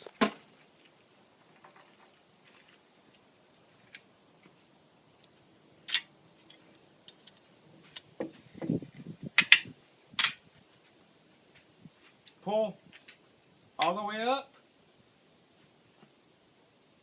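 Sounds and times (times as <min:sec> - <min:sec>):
gun action clicking: 0:09.4 - 0:10.4.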